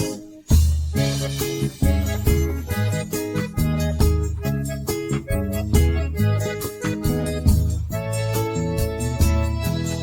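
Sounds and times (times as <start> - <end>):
instrumental backing track: 0.0 - 10.0.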